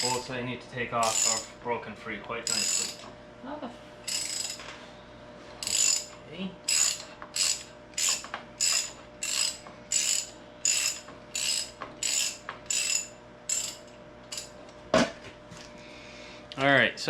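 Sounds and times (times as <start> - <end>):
ratchet wrench clicking: 1.0 - 1.5, 2.5 - 3.0, 4.1 - 4.6, 5.6 - 6.1, 6.7 - 14.5.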